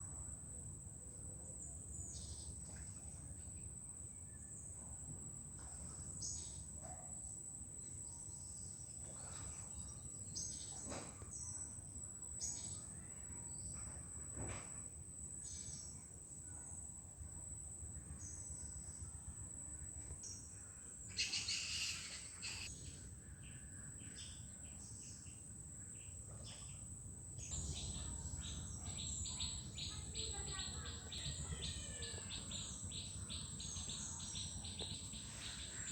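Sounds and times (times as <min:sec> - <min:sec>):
bird chirps: 0:21.1 - 0:22.7, 0:27.4 - 0:35.9.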